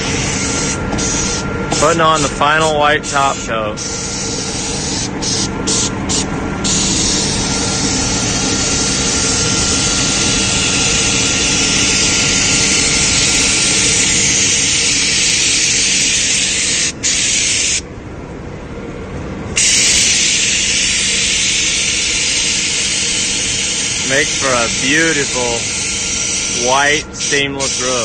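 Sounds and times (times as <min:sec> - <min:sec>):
spray gun hissing: 0:00.0 - 0:01.9, 0:03.0 - 0:17.8, 0:19.6 - 0:28.0
machine hum: 0:00.0 - 0:28.0.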